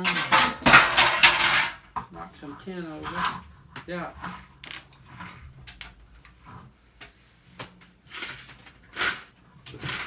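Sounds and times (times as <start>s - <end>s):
sheet metal scraping and knocking: 0.0s - 3.5s.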